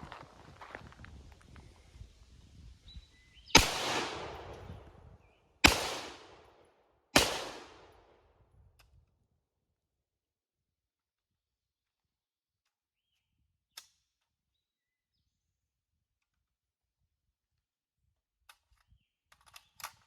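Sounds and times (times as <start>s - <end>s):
rifle shots with rolling echo: 3.5s - 5.0s, 5.6s - 8.3s.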